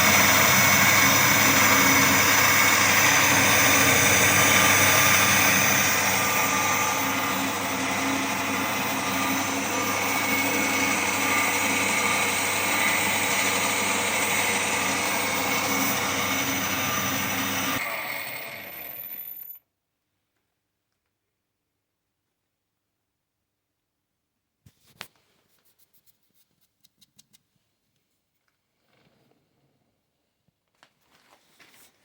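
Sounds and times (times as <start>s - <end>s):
metal lathe running: 0.0s - 19.5s.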